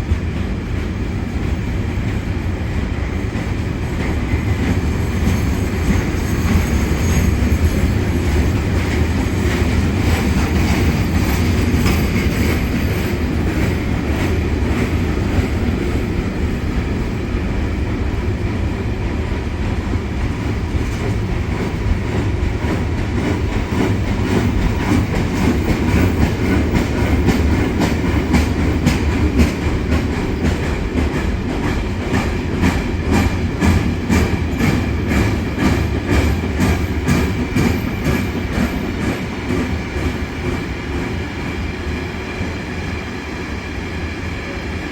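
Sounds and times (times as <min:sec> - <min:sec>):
freight train wheels clacking: 0:00.0 - 0:44.9.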